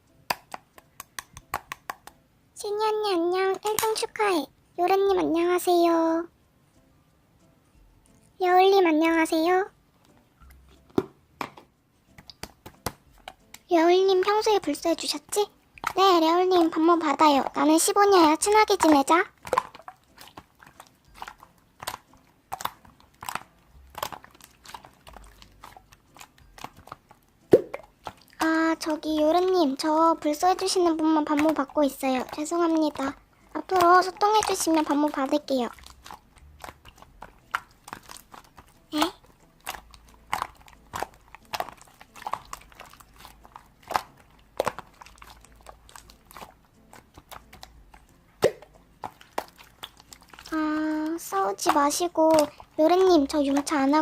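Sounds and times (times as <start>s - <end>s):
sharp clicks and crunchy taps: 0.3s - 2.2s, 10.0s - 14.3s, 18.4s - 29.6s.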